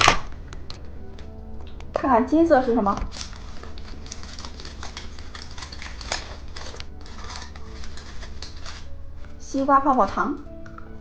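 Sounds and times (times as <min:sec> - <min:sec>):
plastic packaging crinkling: 0:02.5 - 0:10.5.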